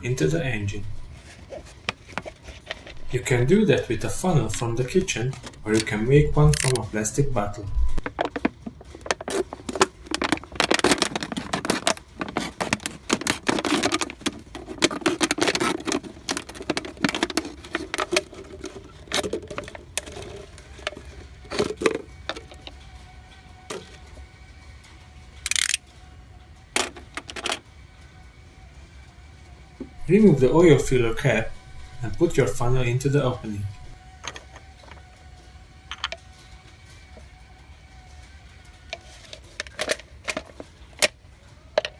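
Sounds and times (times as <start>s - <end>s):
plastic bottle crackling and clicking: 8.0s - 22.8s, 38.9s - 41.2s.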